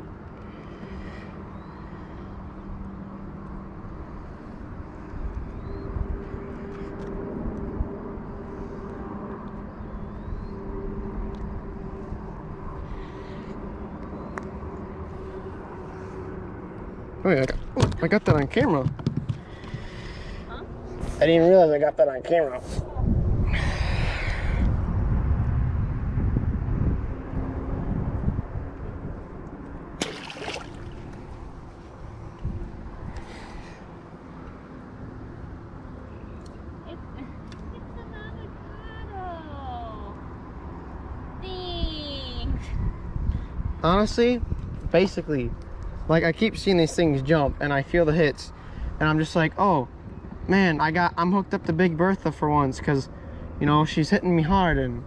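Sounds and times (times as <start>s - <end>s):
wind buffeting microphone: 22.5s - 33.3s, 41.7s - 47.6s.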